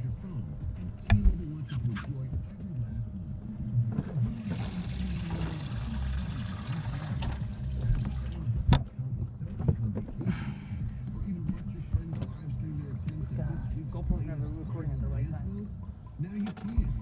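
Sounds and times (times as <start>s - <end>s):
insect drone: 0.0s - 17.0s
water trickling and splashing: 4.4s - 8.4s.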